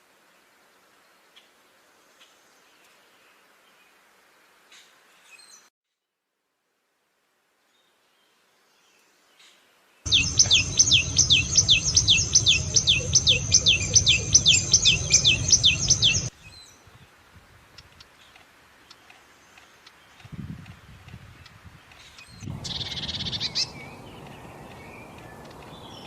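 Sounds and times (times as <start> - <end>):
low rumble: 10.1 - 16.3
songbird whistled trill: 10.1 - 16.3, 22.6 - 26.0.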